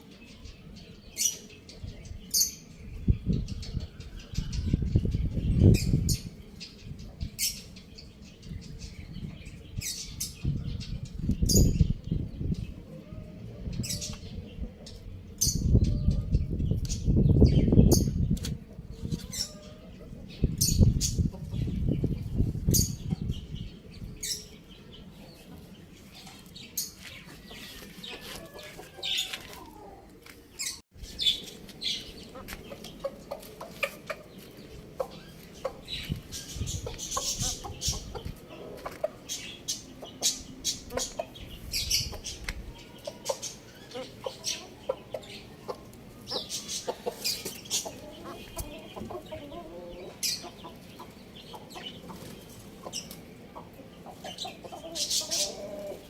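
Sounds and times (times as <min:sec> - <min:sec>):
chickens moving about: 0:25.4 - 0:41.6, 0:42.2 - 0:56.0.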